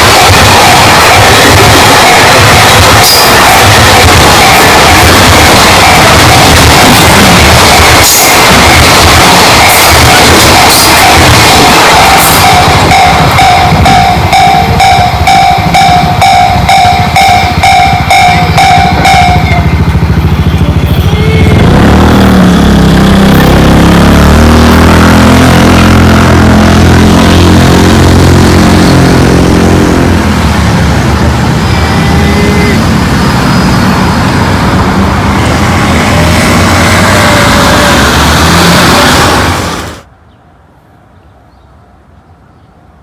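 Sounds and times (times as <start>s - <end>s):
level crossing warning bell: 0.0s - 21.8s
vehicles driving past: 0.0s - 40.1s.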